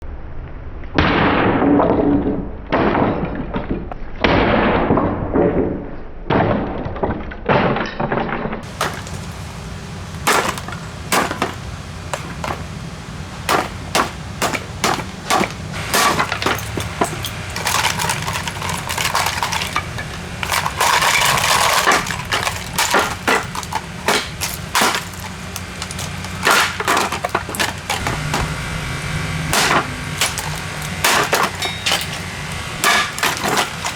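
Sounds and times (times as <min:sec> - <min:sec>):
plastic cracking and breaking: 0:08.6 - 0:28.7, 0:29.5 - 0:33.9
heavy blows on alarm clock radio: 0:08.6 - 0:33.9.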